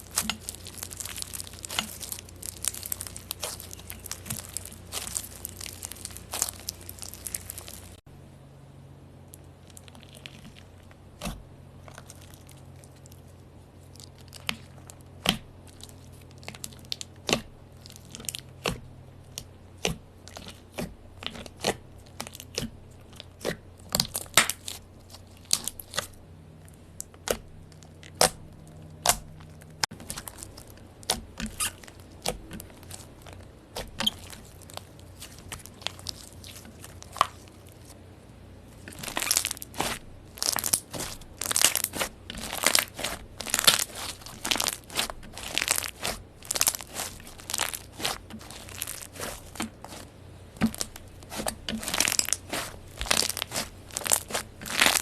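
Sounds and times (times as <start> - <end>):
slime clicking and popping: 38.9 - 50.0.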